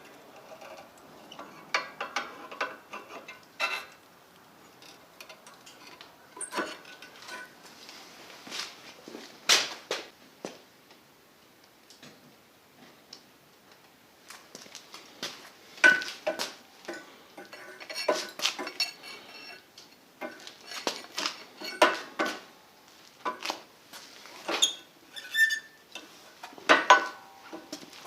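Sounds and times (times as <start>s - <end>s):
metal objects clinking together: 15.8s - 19.6s.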